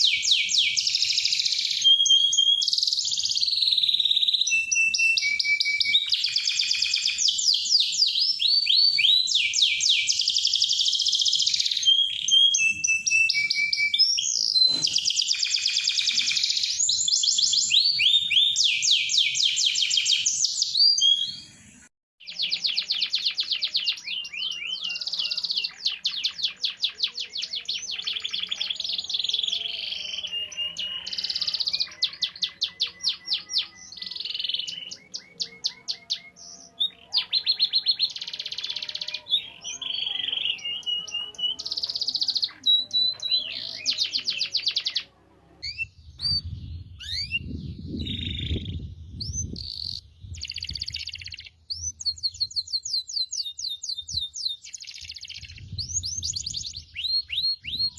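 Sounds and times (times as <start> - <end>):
canary singing trills: 0.0 - 57.9
low rumbling noise: 45.3 - 50.4.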